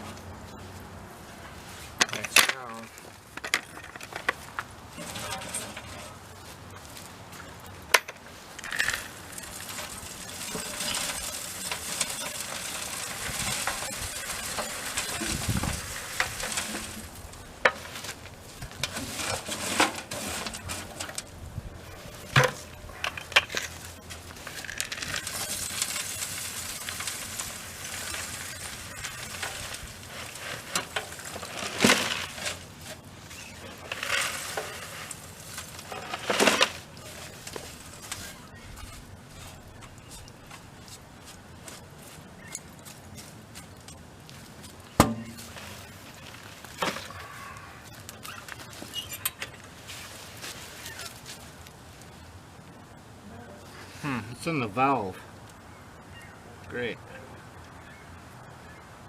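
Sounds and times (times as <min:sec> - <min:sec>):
charcoal lumps rattling against metal: 0:03.4 - 0:06.4, 0:07.9 - 0:40.3, 0:44.5 - 0:51.3.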